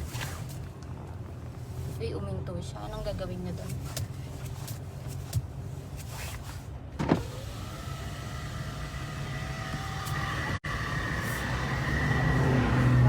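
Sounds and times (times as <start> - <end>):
car engine idling hum: 0.0 - 13.0
power window motor whining: 7.0 - 13.0.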